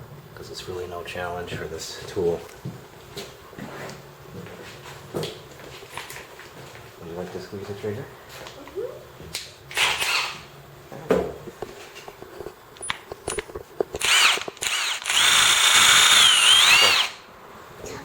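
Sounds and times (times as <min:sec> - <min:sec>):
impact wrench motor whine: 0:09.7 - 0:10.5, 0:13.3 - 0:17.3.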